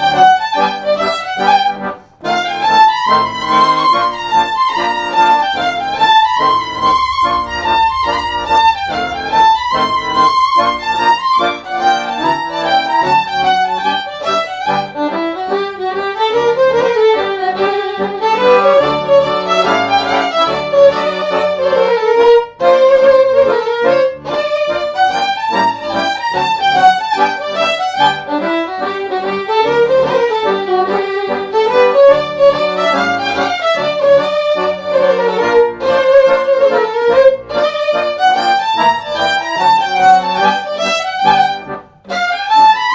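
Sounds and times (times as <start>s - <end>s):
fiddle folk melody: 0.0s - 42.9s
low drone: 2.1s - 14.0s.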